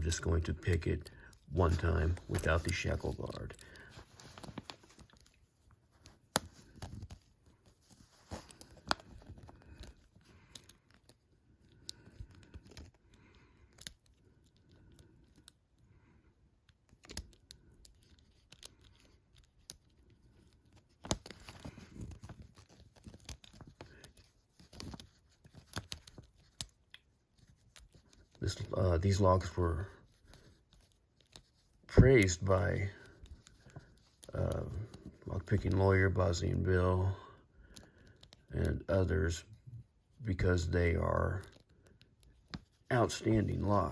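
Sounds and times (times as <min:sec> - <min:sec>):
lock pick clicks and scratches: 0:08.3 - 0:15.8, 0:16.6 - 0:28.4.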